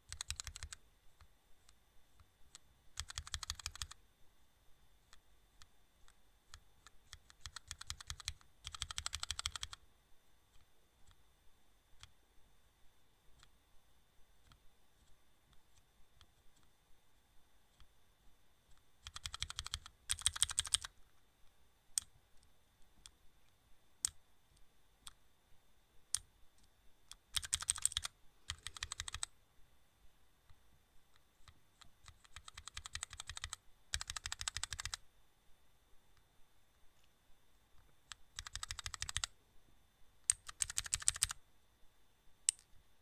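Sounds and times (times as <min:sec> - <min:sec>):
faint high whine: 0:00.0 - 0:43.0
rapid clicking: 0:27.4 - 0:29.3, 0:31.4 - 0:35.0, 0:40.3 - 0:41.4.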